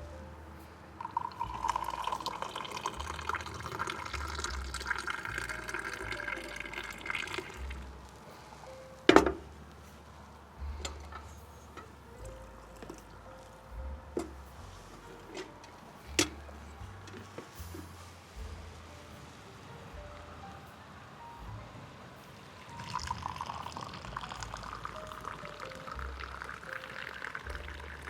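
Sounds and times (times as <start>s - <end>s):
tea pouring into glass: 1.0s - 8.6s, 22.7s - 28.0s.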